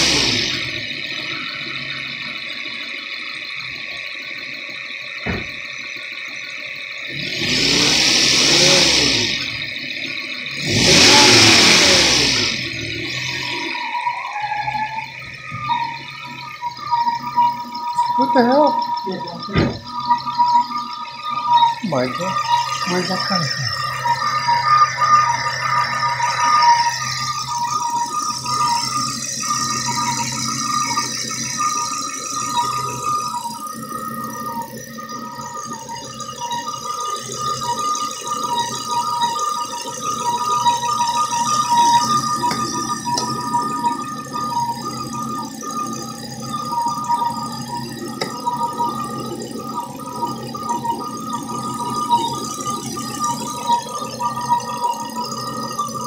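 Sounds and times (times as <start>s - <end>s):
car engine revving: 0.0s - 2.2s, 7.0s - 34.5s
rattling mechanical whine: 0.0s - 56.0s.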